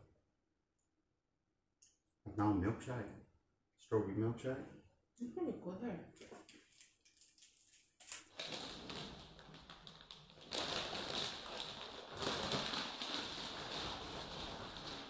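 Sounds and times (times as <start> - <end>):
plastic wrapper crinkling: 6.2 - 15.0.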